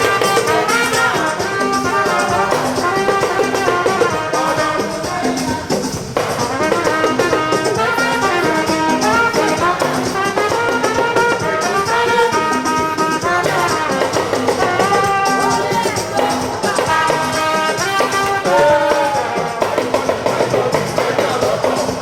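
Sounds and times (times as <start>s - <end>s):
brass horn music: 0.0s - 22.0s
repeating bass line: 0.0s - 22.0s.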